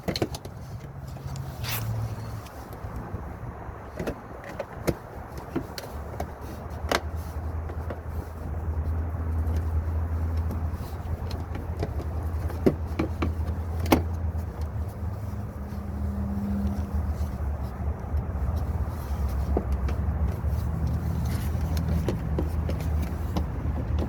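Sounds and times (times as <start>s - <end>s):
plastic liner clicking and knocking: 21.6s - 24.0s.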